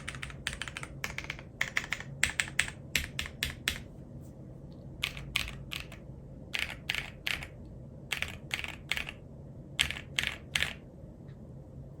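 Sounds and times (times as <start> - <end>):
mechanical keyboard typing: 0.0 - 3.9, 5.0 - 9.2, 9.8 - 10.8.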